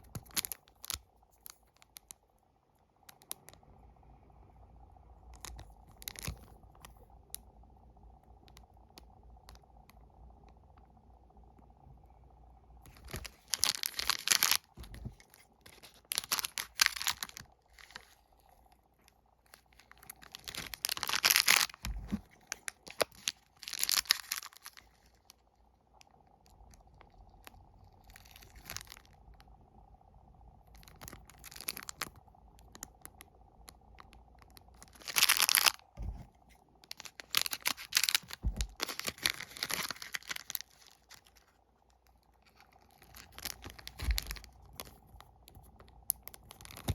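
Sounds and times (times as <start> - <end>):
plastic wrappers crinkling: 0.0 - 2.0, 12.9 - 18.8, 19.4 - 25.4, 28.0 - 29.1, 30.7 - 32.8, 34.4 - 46.9.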